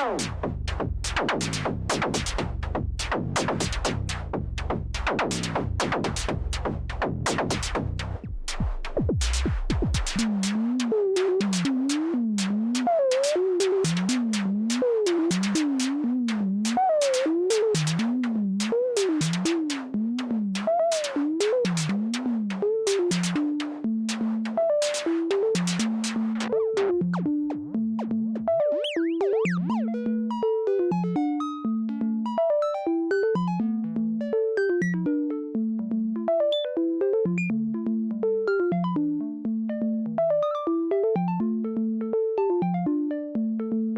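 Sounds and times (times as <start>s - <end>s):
percussion synthesizer hits: 0.2s - 10.6s.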